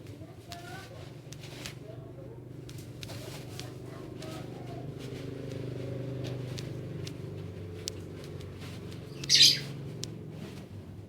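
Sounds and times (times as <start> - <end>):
bird high call: 9.1 - 9.7.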